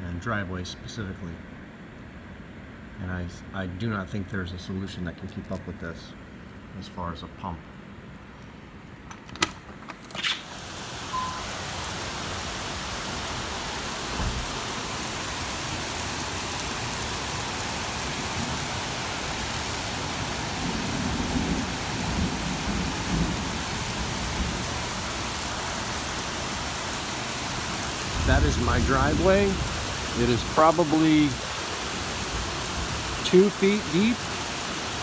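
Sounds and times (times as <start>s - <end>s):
torrential rain: 10.4s - 35.0s
low rumbles: 28.0s - 33.2s.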